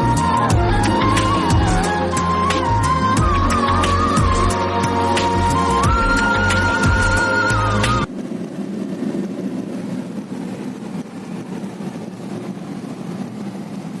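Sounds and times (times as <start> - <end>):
background music: 0.0 - 8.1
steady low rumbling: 0.0 - 13.9.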